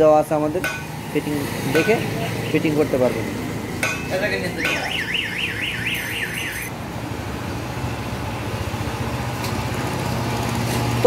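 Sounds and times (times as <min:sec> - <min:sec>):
electronic warbling alarm tone: 0:04.6 - 0:06.7.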